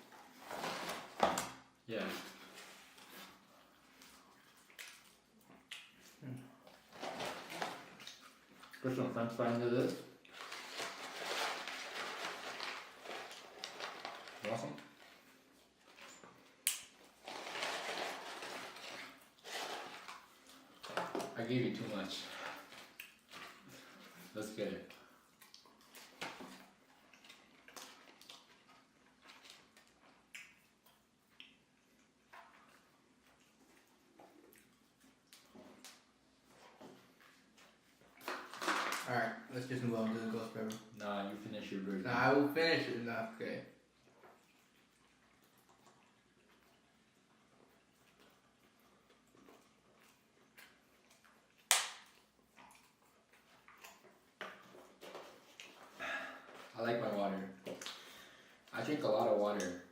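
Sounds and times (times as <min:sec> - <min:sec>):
person chewing food: 0:02.4 - 0:08.8, 0:22.5 - 0:24.3, 0:25.0 - 0:38.5, 0:43.8 - 0:56.7
soft rustles: 0:10.3 - 0:24.4.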